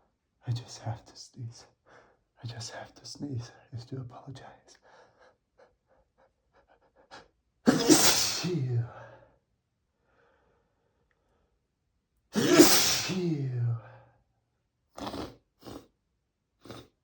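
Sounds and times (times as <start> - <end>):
faint catching breaths: 1.7 - 2.3, 4.7 - 7.4
man sneezing: 7.7 - 9.0, 12.4 - 13.8.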